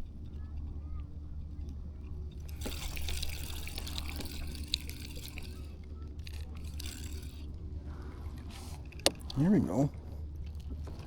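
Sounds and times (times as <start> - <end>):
water dripping and trickling: 2.3 - 7.5.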